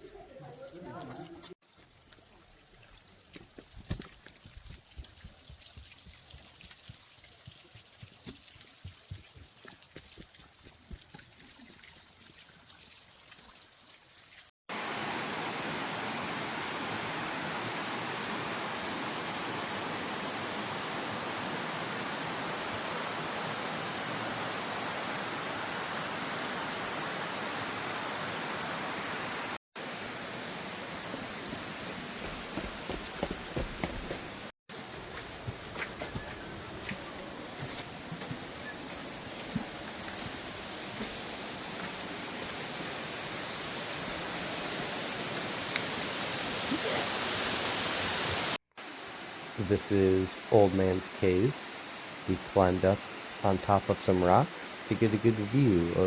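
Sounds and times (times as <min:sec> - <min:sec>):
waterfall rushing: 0:14.7 - 0:56.0.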